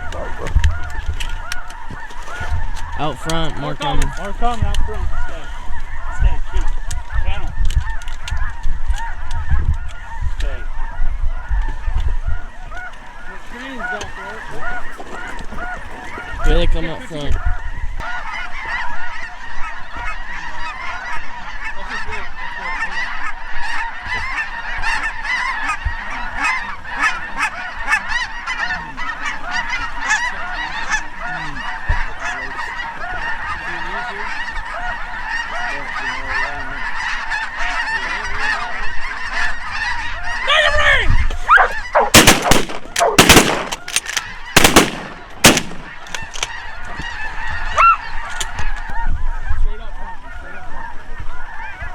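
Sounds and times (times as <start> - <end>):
geese honking: 0.0 - 51.9
shotgun blasts: 42.0 - 46.4.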